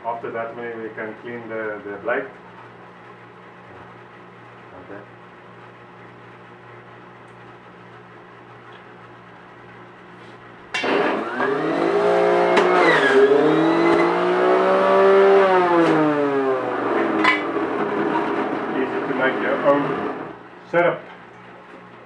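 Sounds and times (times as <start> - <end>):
electric blender running: 10.8 - 20.4.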